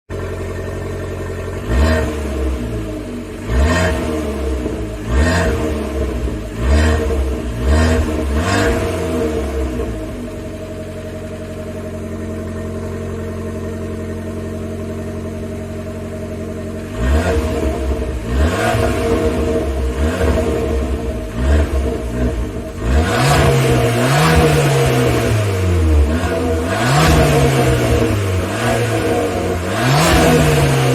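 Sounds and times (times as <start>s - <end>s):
car engine revving and idling: 0.1s - 30.9s.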